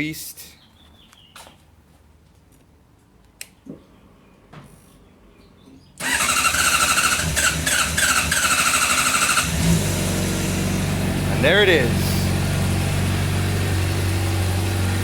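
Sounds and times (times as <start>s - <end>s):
starter motor cranking engine: 6.0s - 15.0s.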